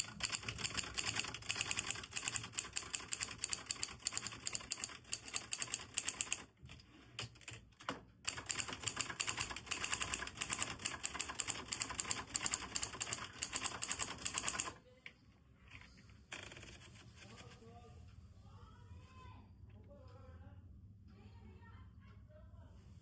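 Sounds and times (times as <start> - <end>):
typewriter keys clacking: 0.0 - 6.4, 8.3 - 14.7.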